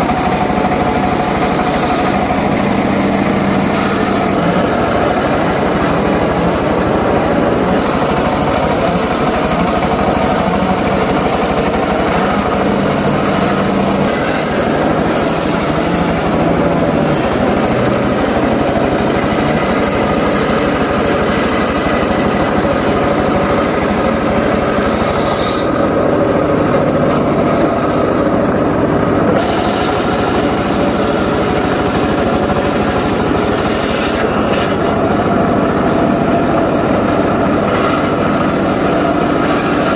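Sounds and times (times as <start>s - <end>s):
engine-driven saw running: 0.0s - 39.9s.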